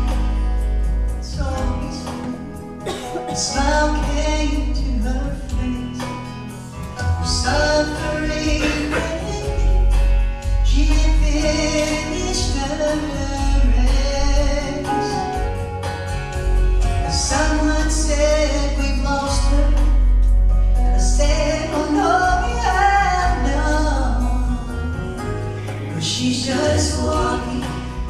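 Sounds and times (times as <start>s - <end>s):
instrumental backing with bass: 0.0s - 28.0s
group singing gospel in harmony: 5.0s - 16.3s, 21.0s - 28.0s.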